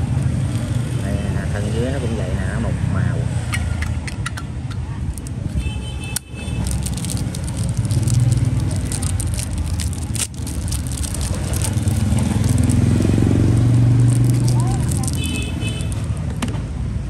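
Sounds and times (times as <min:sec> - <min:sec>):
traffic hum: 0:00.0 - 0:17.0
engine passing close: 0:06.6 - 0:16.6.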